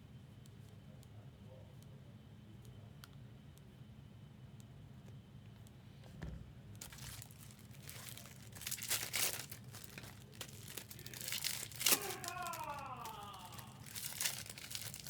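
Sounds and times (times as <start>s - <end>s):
plastic wrapping crinkling and tearing: 6.8s - 15.0s.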